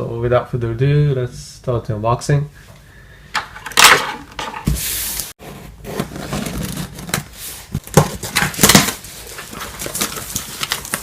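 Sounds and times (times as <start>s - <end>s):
package rustling and crinkling: 6.0s - 11.0s.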